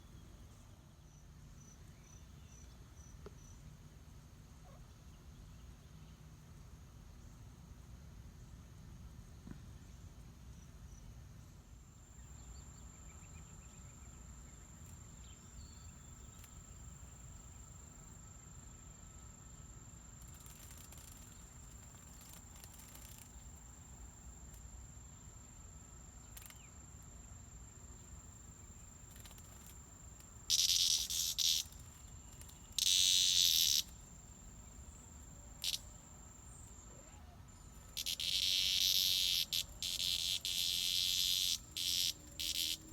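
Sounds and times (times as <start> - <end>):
cicada buzzing bursts: 30.4 - 34.3, 35.5 - 36.4, 37.9 - 42.9.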